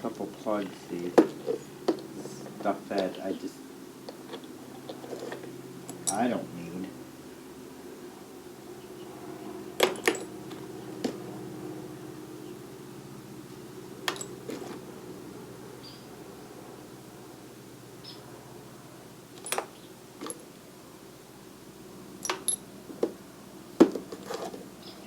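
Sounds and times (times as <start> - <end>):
low steady hum: 0.0 - 25.0
metal tool pieces clinking: 14.1 - 14.8, 19.4 - 20.4, 22.2 - 22.6.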